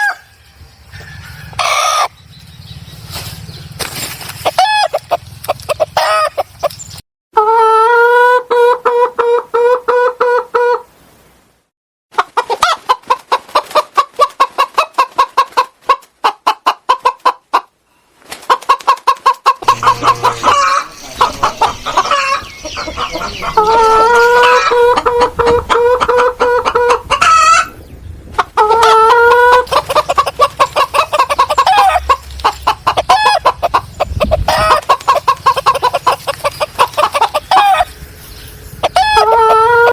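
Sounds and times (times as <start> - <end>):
long crowing calls: 0.0 - 2.2
chickens clucking: 0.0 - 10.9, 12.2 - 39.9.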